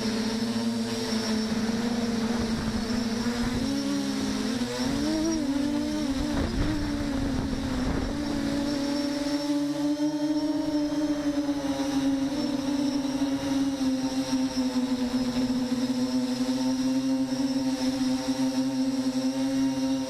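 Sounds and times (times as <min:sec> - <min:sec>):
drone motors whining: 0:00.0 - 0:20.0
low wind rumble: 0:01.5 - 0:16.2.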